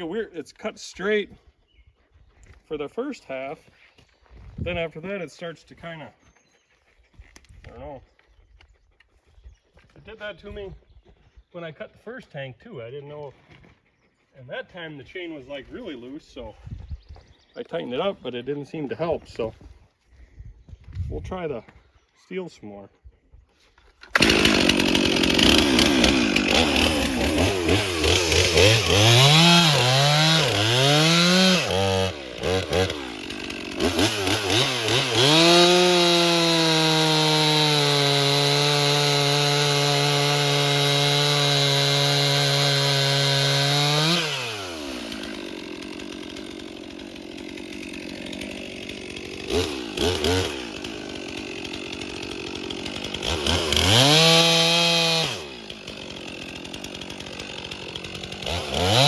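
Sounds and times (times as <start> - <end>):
chainsaw revving and cutting log: 24.0 - 59.0.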